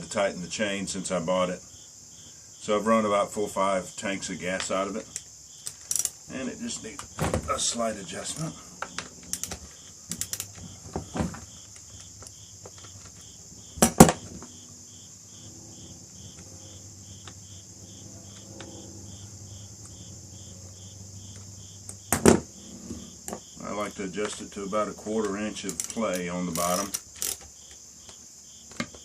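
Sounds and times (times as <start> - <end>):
insects trilling: 0.0 - 29.0
pulsing insect chirp: 0.1 - 29.0
tool clicking on metal: 5.1 - 6.2, 25.2 - 27.8.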